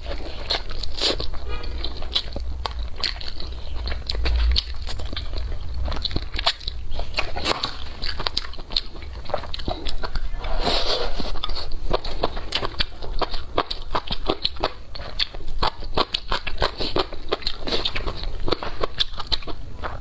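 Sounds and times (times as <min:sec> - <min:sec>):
crunchy chewing: 0:00.0 - 0:20.0.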